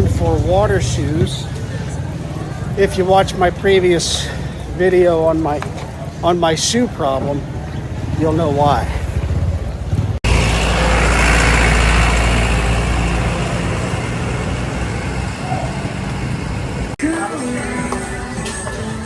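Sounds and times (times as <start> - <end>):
vehicle engine running: 0.0 - 4.8, 7.3 - 17.0
road noise: 0.0 - 19.0.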